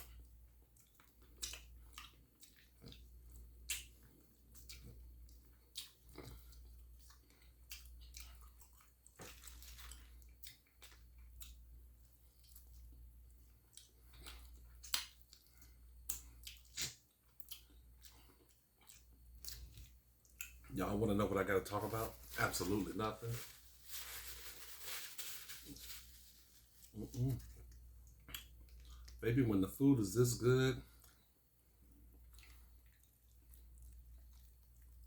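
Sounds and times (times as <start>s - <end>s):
food being chewed: 0.0s - 20.8s, 26.6s - 29.2s, 30.8s - 35.0s
low steady hum: 0.0s - 35.0s
wet mouth smacks and clicks: 16.1s - 17.6s.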